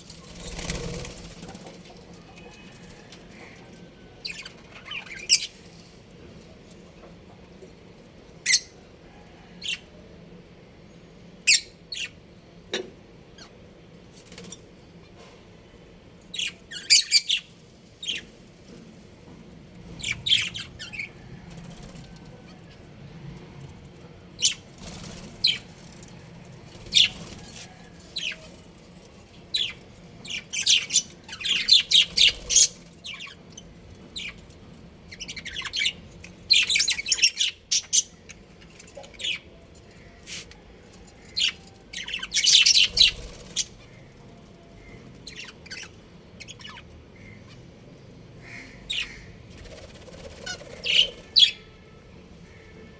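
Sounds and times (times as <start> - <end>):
budgerigars chirping and squawking: 4.2 - 5.6, 8.5 - 8.8, 16.3 - 18.3, 19.8 - 21.2, 24.4 - 25.7, 26.8 - 28.6, 29.5 - 34.5, 35.1 - 40.4, 41.2 - 47.7, 48.4 - 51.7.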